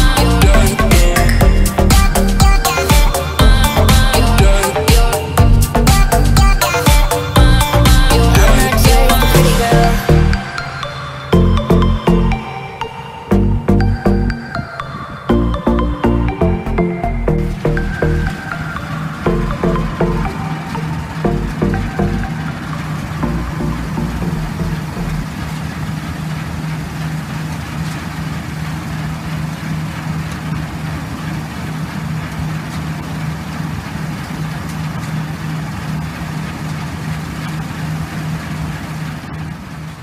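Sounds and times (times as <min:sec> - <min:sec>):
instrumental background music with beat: 0:00.0 - 0:25.2
combine harvester engine drone: 0:00.0 - 0:40.0.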